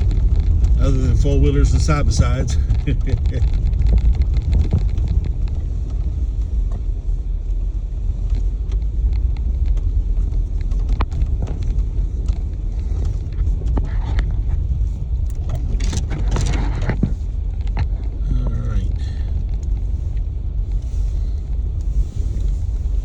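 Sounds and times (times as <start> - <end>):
tyres and engine rumbling: 0.0 - 23.0.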